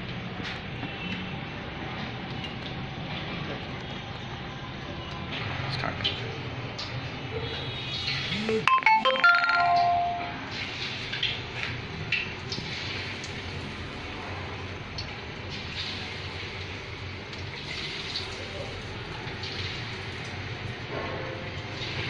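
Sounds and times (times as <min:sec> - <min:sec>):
electronic beeping melody: 0:08.3 - 0:10.4.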